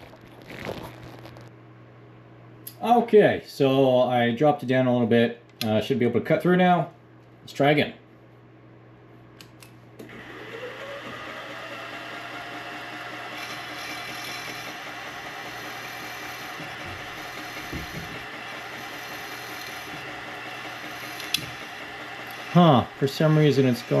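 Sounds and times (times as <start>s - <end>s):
milling machine spindle whine: 10.0s - 24.0s.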